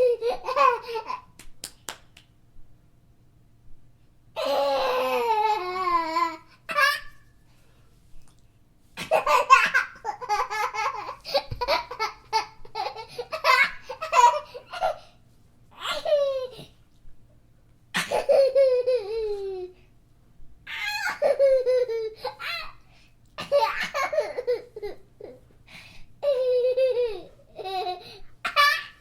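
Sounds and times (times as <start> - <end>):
child laughing: 0.0 - 1.4, 9.0 - 15.0, 15.8 - 16.8, 18.0 - 19.8, 20.7 - 22.8, 23.4 - 25.4, 26.2 - 29.0.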